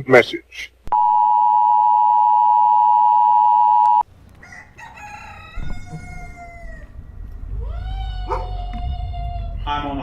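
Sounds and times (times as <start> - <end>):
rooster crowing: 4.4 - 9.0.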